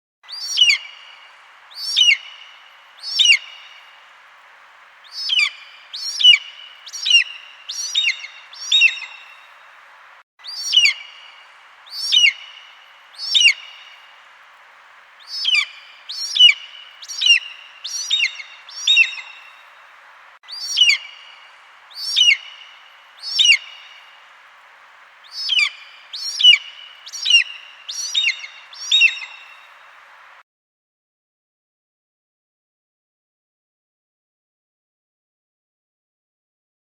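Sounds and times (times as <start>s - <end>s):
faint steady hiss: 0.2s - 30.4s
eagle calling: 0.3s - 30.4s.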